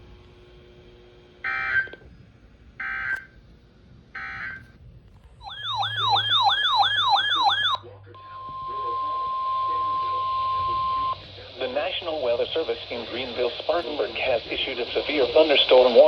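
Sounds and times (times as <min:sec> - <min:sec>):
warbling siren alert tone: 0:05.4 - 0:11.2
digital data tone bursts: 0:05.4 - 0:16.0.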